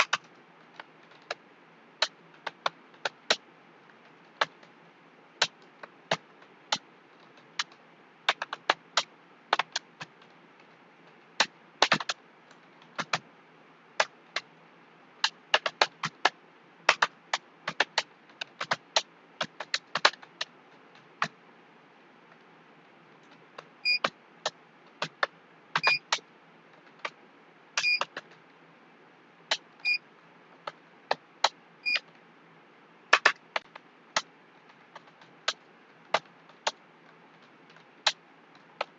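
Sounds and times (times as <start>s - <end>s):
keyboard typing: 0.0s - 1.4s, 2.0s - 4.8s, 5.4s - 13.2s, 15.2s - 21.4s, 23.2s - 26.2s, 27.8s - 28.4s, 30.6s - 32.2s, 33.1s - 38.9s.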